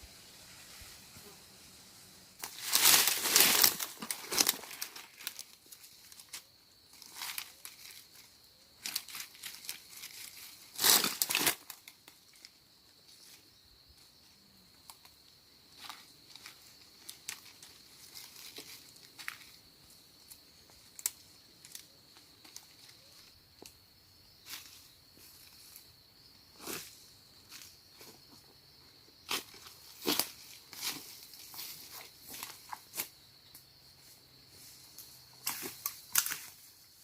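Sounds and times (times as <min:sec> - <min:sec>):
dry plant material crackling: 0:02.4 - 0:12.6, 0:35.4 - 0:36.6.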